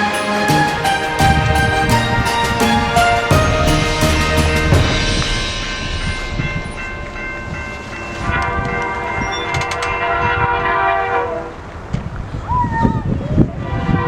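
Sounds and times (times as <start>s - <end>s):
diesel locomotive horn: 0.0s - 6.0s, 10.2s - 11.6s
train rumbling past: 0.0s - 11.9s.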